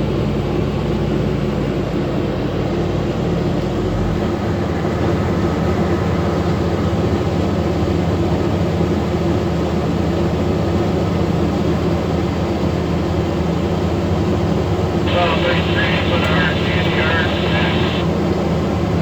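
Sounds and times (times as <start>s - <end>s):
heavy machine engine running: 14.9s - 18.2s.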